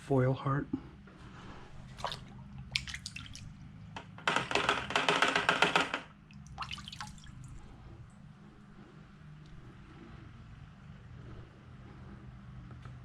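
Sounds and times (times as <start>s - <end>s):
water splashing and dripping: 1.8s - 4.0s, 6.2s - 8.2s.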